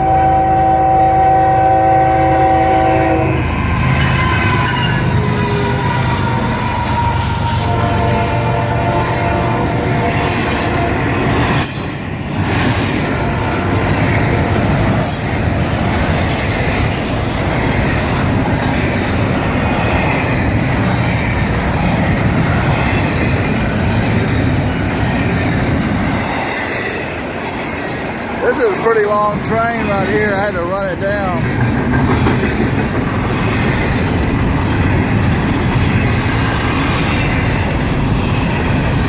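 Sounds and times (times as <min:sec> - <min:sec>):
train wheel squeal: 0:00.0 - 0:24.5, 0:26.0 - 0:30.0
freight train rumble and rattle: 0:00.0 - 0:39.0
clickety-clack of rail joints: 0:03.6 - 0:39.0.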